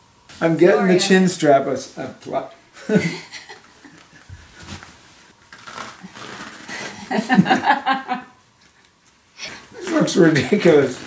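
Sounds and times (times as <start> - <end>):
faint rustling: 3.5 - 7.4.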